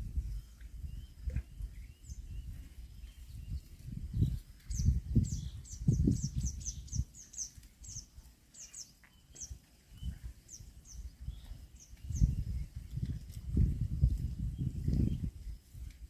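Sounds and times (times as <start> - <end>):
small bird chirping: 0.2 - 13.2.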